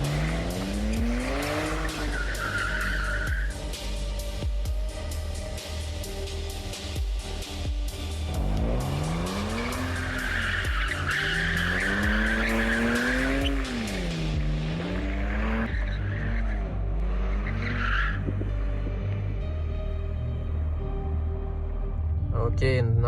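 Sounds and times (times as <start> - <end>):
tyres squealing: 0.0 - 3.6, 8.3 - 16.6
car engine revving: 0.0 - 22.1
background music: 0.0 - 23.0.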